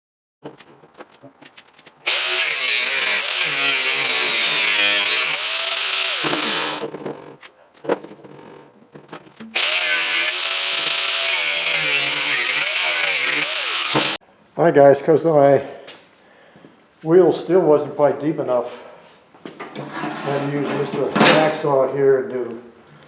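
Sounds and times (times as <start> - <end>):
grinder cutting metal: 2.1 - 6.9, 9.5 - 14.2.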